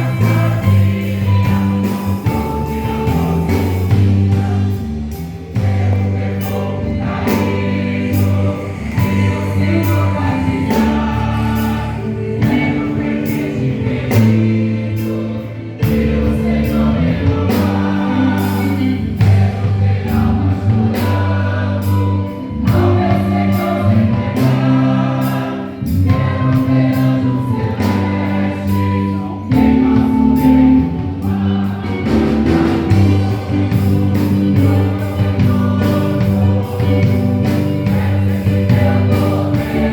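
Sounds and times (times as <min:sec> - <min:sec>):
band playing: 0:00.0 - 0:39.9
choir singing gospel song: 0:00.0 - 0:39.9
heavy bass line: 0:00.0 - 0:39.9
steady drum beat: 0:00.0 - 0:39.9.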